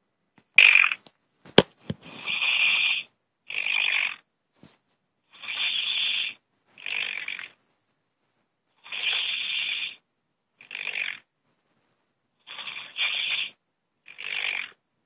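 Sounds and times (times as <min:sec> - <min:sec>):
snoring through a phone: 0:02.1 - 0:04.2, 0:05.3 - 0:07.6, 0:08.8 - 0:10.0, 0:10.6 - 0:11.3, 0:12.4 - 0:14.8.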